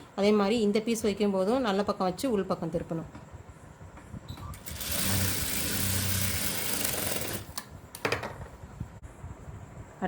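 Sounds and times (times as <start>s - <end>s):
sewing machine running: 4.6s - 7.6s.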